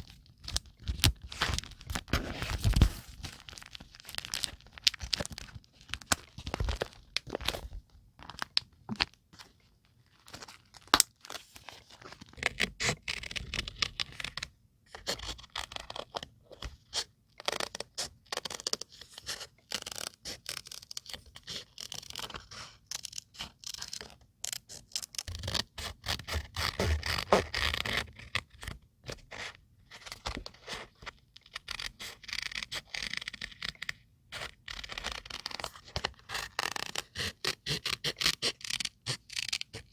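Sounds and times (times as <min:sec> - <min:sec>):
paper scraping and tearing: 0:34.3 - 0:39.9.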